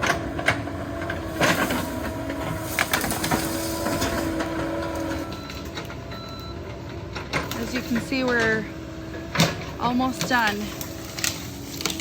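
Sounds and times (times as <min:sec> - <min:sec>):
excavator diesel engine running: 0:00.0 - 0:12.0
sharp cracks and knocks: 0:09.3 - 0:12.0.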